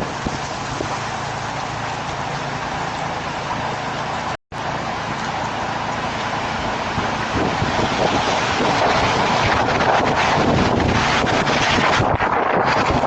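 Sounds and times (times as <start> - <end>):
strong wind on microphone: 0.0 - 1.4, 6.3 - 13.0.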